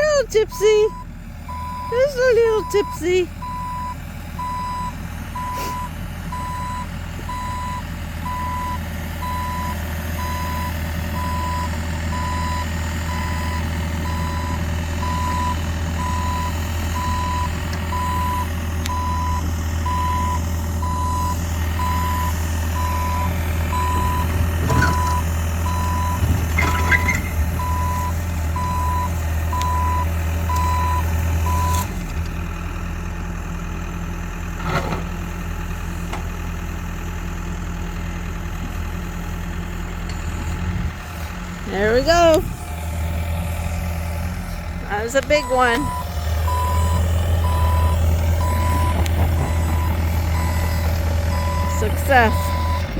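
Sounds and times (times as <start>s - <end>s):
excavator travel alarm beeping: 0.0s - 31.9s, 41.7s - 42.5s, 44.8s - 52.9s
diesel engine working: 0.0s - 52.9s.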